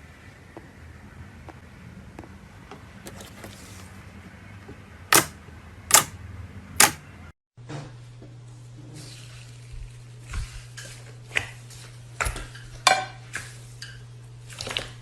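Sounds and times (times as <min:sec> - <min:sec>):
sharp clicks: 0:05.1 - 0:05.3, 0:05.9 - 0:06.1, 0:06.8 - 0:07.0.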